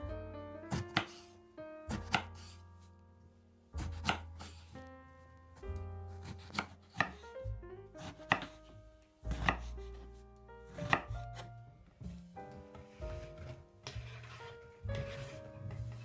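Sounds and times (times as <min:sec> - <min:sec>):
knife cutting eggplant: 0:00.7 - 0:01.3, 0:01.9 - 0:02.6, 0:03.8 - 0:04.7, 0:05.6 - 0:07.3, 0:08.0 - 0:10.1, 0:10.7 - 0:11.5.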